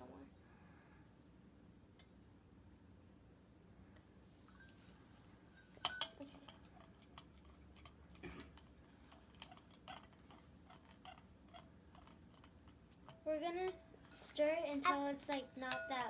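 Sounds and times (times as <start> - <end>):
spoon tapping mixing bowl: 5.8 - 8.8, 9.4 - 16.0.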